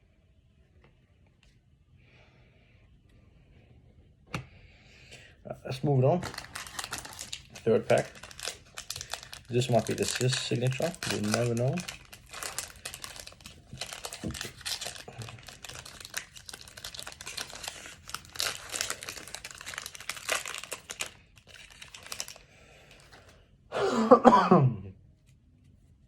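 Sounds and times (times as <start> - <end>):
foil wrapper tearing and crinkling: 6.2 - 23.2.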